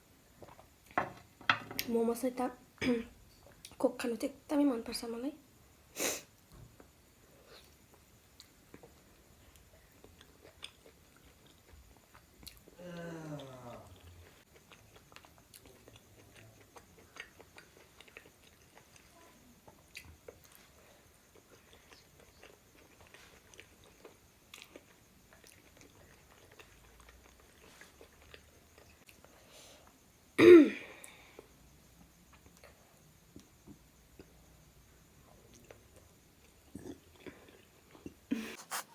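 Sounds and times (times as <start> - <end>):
close-up chewing: 6.8 - 12.8, 13.4 - 29.3.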